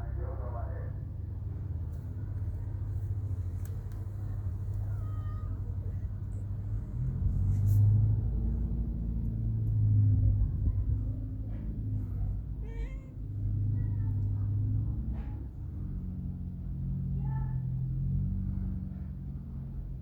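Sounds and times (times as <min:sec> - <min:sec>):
cat purring: 0:01.7 - 0:16.3.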